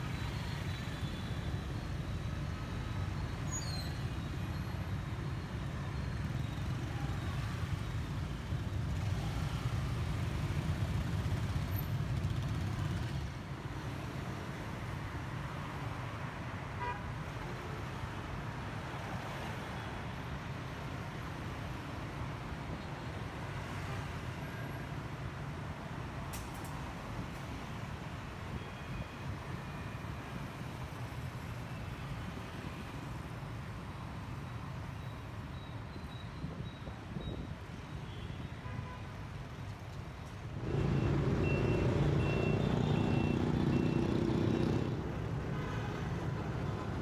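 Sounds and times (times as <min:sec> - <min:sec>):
road traffic rumble: 0:00.0 - 0:17.0, 0:39.3 - 0:47.0.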